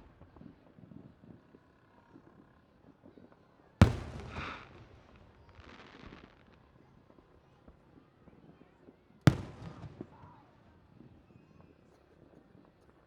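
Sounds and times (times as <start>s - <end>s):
firework bang: 3.8s - 5.4s
firework hiss and crackle: 3.8s - 6.5s.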